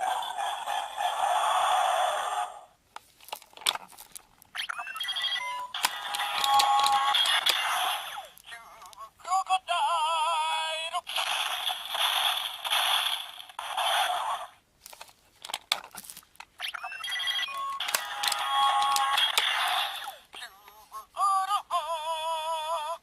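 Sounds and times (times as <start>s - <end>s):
toy electronic sound effects: 4.5s - 8.9s, 16.6s - 20.8s
sharp clicks: 5.7s - 8.0s, 17.6s - 19.7s.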